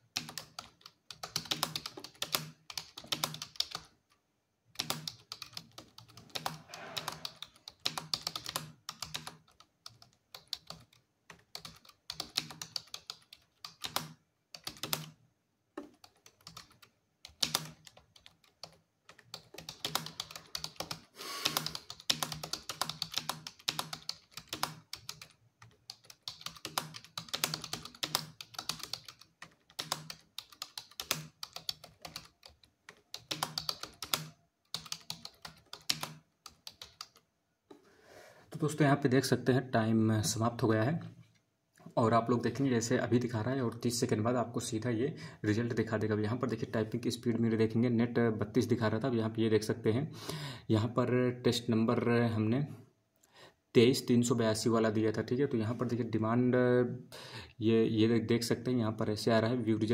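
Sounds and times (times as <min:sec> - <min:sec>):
computer keyboard typing: 0:00.1 - 0:04.0, 0:04.7 - 0:15.2, 0:15.8 - 0:37.2.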